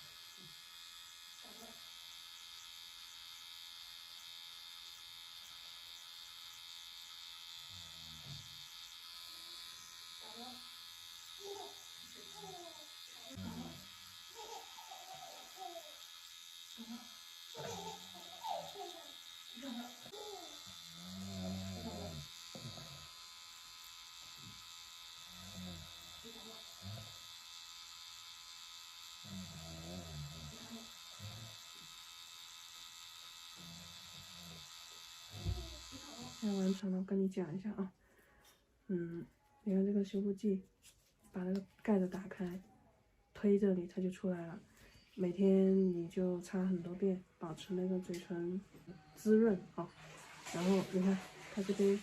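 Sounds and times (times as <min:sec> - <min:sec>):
tattoo machine buzzing: 0:00.0 - 0:36.8.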